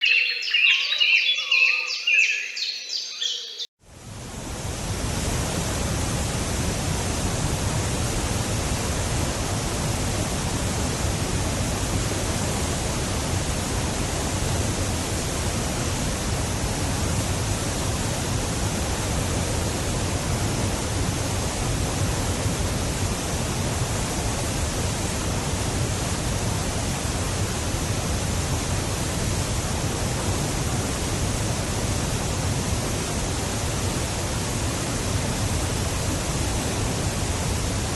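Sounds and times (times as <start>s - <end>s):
birds chirping: 0.0s - 3.7s
rushing falling water: 3.9s - 37.9s.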